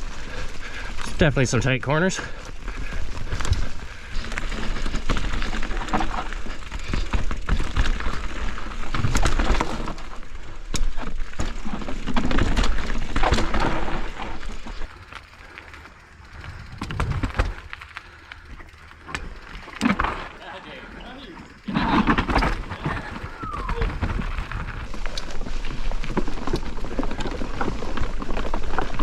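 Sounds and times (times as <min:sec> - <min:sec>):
bike rattles and clicks: 0:00.0 - 0:29.0
bike tyres rolling over dirt: 0:00.0 - 0:29.0
steady low rumble: 0:14.4 - 0:26.3.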